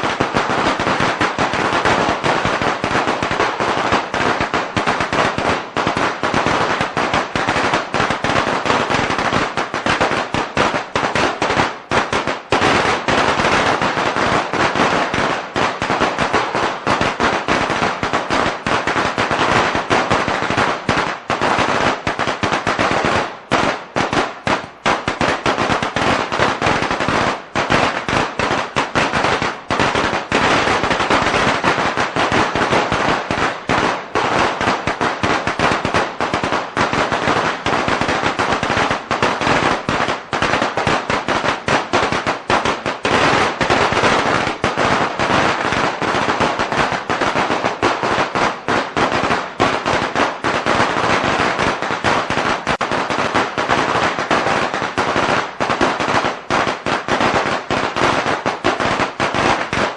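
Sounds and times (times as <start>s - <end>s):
firecrackers crackling: 0.0s - 59.9s.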